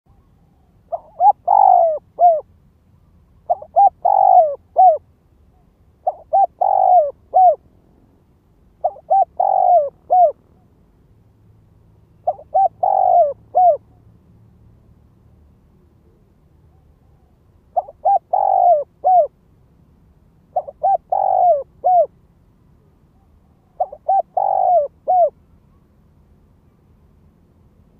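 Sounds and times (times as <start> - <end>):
dove cooing: 0.1 - 2.5, 3.4 - 5.0, 6.0 - 7.6, 8.8 - 10.6, 12.2 - 14.0, 16.1 - 19.4, 20.5 - 22.1, 23.2 - 25.4.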